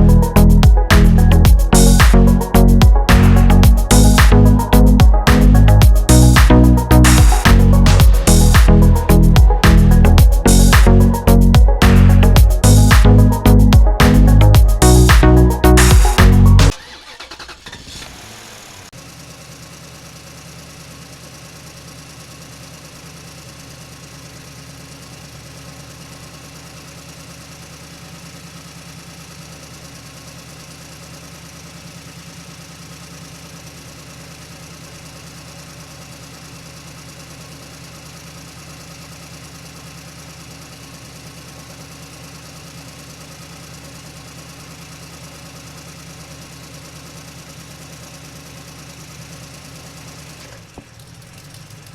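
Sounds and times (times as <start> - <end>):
engine idling: 0.0 - 51.9.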